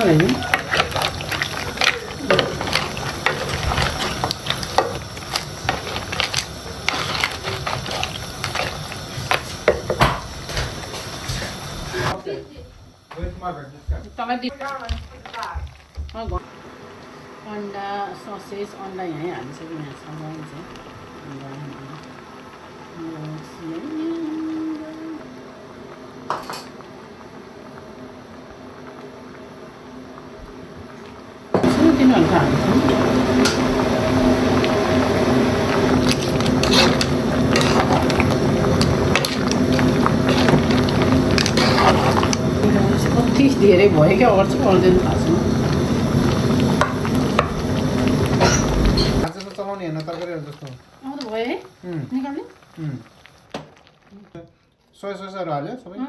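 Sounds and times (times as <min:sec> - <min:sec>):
woman speaking: 0:00.0 - 0:00.5, 0:12.1 - 0:12.8, 0:13.9 - 0:16.4, 0:17.5 - 0:20.7, 0:23.0 - 0:25.3, 0:31.6 - 0:33.2, 0:42.6 - 0:45.6, 0:51.0 - 0:52.6
faint hum with soft hiss: 0:00.0 - 0:56.0.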